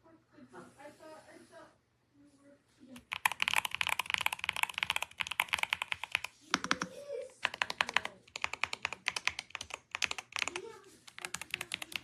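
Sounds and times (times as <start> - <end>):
mechanical keyboard typing: 3.0 - 12.0.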